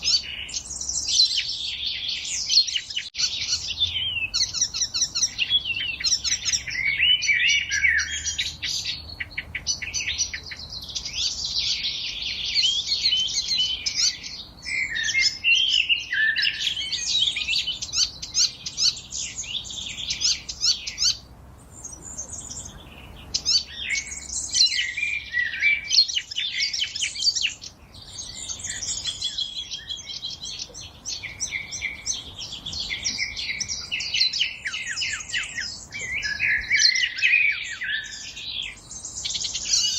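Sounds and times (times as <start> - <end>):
songbirds singing and chirping: 0.0 - 39.9.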